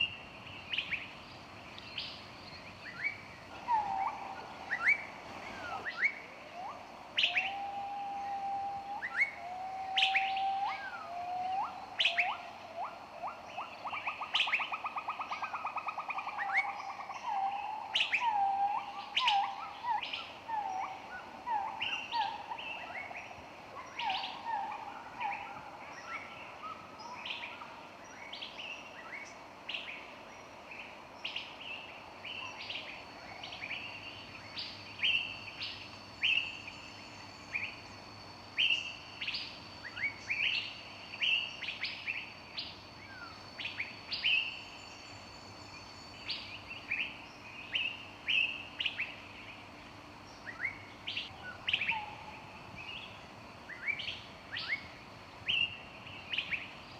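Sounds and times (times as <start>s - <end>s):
faint steady hiss: 0.0s - 56.9s.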